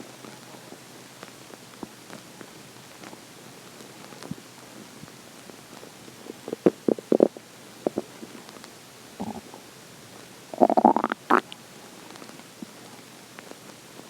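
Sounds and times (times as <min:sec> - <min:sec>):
stomach growling: 0:06.3 - 0:08.2, 0:09.2 - 0:09.6, 0:10.6 - 0:11.6.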